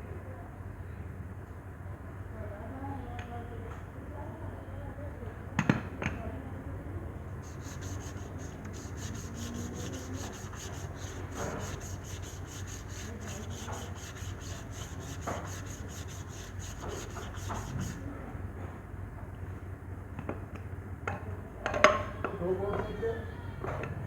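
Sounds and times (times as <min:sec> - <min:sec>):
scrubbing strokes: 0:07.4 - 0:18.1.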